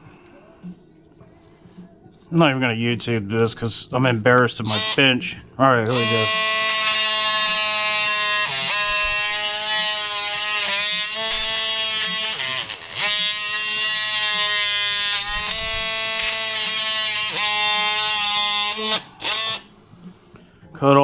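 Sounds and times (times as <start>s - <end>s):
electric saw cutting plastic: 4.7s - 5.1s, 5.9s - 19.7s.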